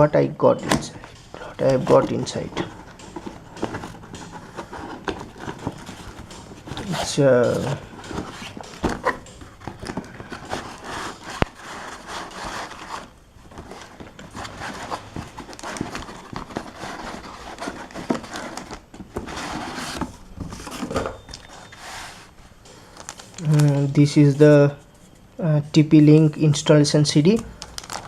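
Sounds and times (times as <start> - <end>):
cardboard box being opened: 1.6 - 22.3.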